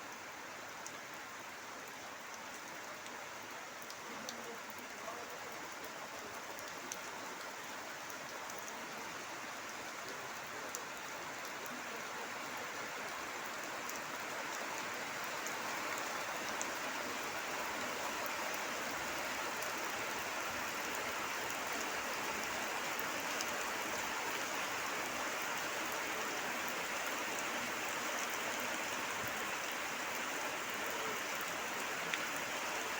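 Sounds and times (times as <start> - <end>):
rain falling: 0.0 - 32.9.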